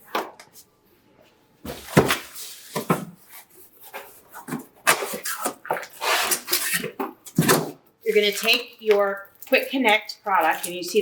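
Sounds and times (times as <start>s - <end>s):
carton rustling and knocking: 1.7s - 5.9s.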